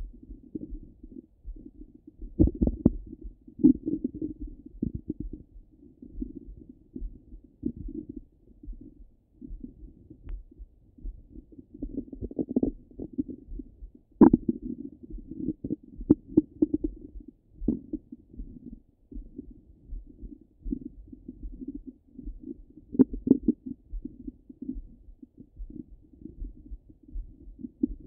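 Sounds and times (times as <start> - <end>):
stomach gurgling: 2.3 - 5.5, 11.7 - 19.5, 20.2 - 25.0.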